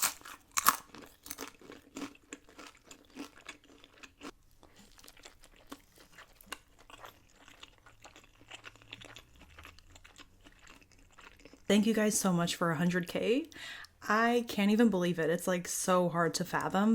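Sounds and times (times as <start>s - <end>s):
person chewing crunchy food: 0.0s - 11.7s.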